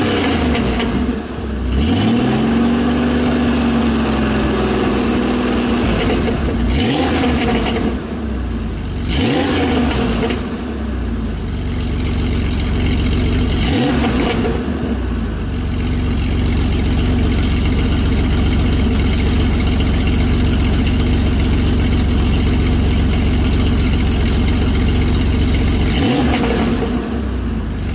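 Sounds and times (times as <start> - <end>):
engine exhaust idling: 3.2 - 27.9
engine revving blips: 5.7 - 8.0, 13.5 - 14.9, 25.8 - 27.2.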